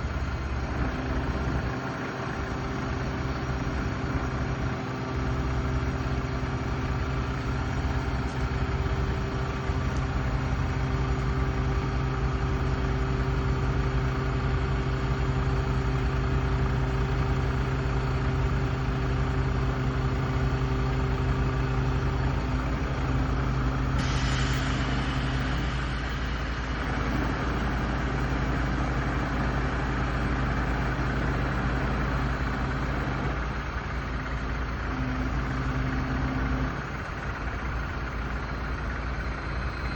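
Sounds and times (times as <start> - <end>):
tractor diesel engine idling: 0.0 - 39.9
hiss: 24.0 - 26.9.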